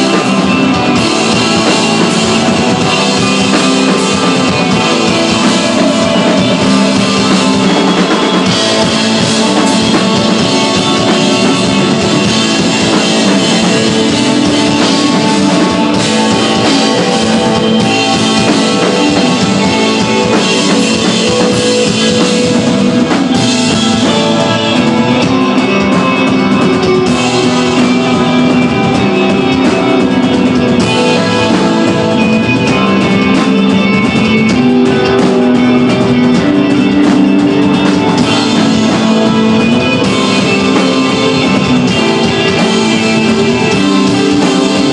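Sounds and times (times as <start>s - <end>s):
bass guitar: 0.0s - 44.9s
drum kit: 0.0s - 44.9s
electric guitar: 0.0s - 44.9s.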